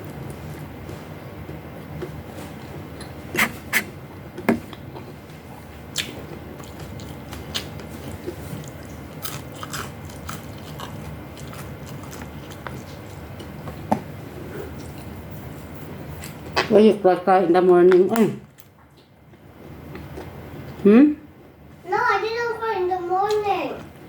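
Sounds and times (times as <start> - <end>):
person chewing and biting food: 5.9 - 13.6.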